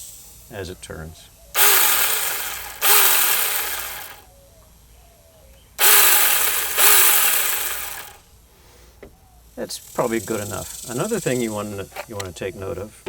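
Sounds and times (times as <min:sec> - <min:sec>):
mini chainsaw running: 0:01.6 - 0:04.2, 0:05.8 - 0:08.2.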